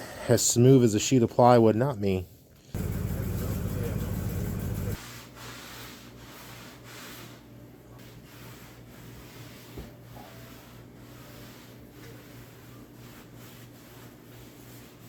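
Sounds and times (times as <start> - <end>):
steady low hum: 2.8 - 5.0
rubbing on wood: 4.6 - 15.0.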